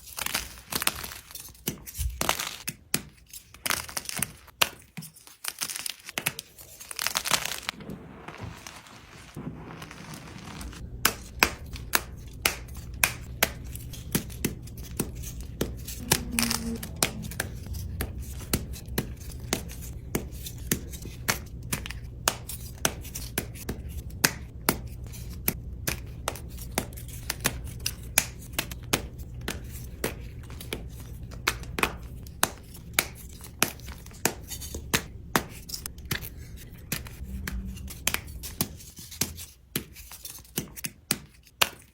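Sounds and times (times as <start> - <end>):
chalk crunching: 0.0 - 21.3
low steady hum: 9.4 - 39.6.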